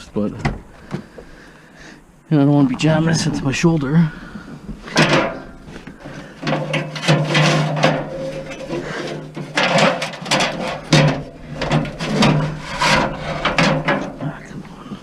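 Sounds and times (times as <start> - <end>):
scrap scraping against van interior: 4.3 - 14.6.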